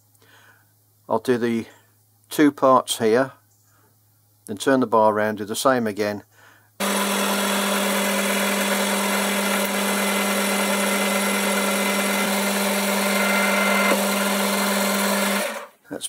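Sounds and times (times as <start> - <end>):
metal lathe motor and gear hum: 6.8 - 15.7.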